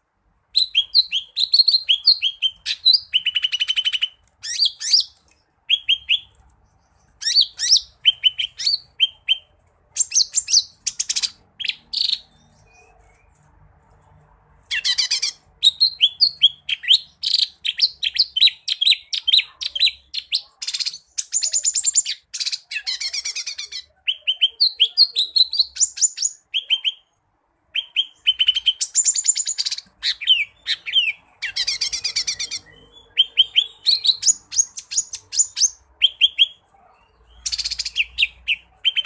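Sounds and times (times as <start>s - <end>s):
bird singing chirps and trills: 0.6s - 13.4s, 27.8s - 39.0s.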